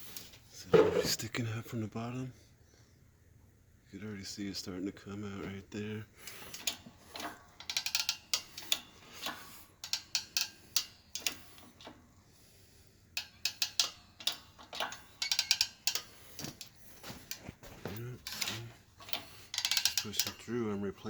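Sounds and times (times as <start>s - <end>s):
hydraulic press jack clicking: 6.2s - 12.0s, 13.2s - 17.4s, 18.2s - 20.4s.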